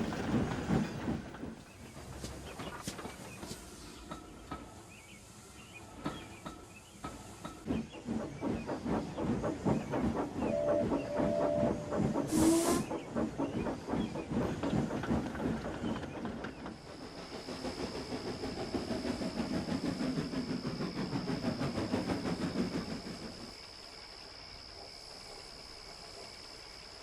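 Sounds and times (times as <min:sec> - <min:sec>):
rail clatter: 0:00.0 - 0:04.8, 0:06.0 - 0:22.0
steam locomotive chuffing: 0:00.0 - 0:27.0
hissing steam burst: 0:08.0 - 0:15.6
two-note train whistle: 0:10.4 - 0:12.9.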